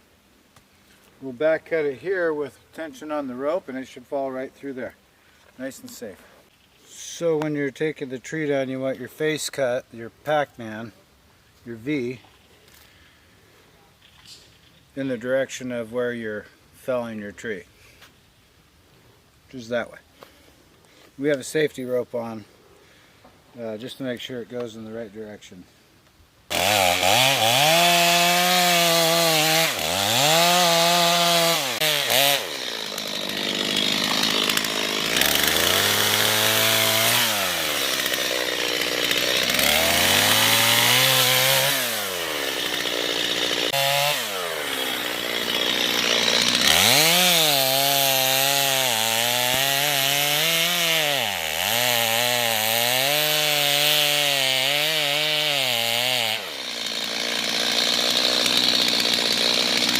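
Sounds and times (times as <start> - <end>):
chainsaw cutting wood: 26.5 - 59.9.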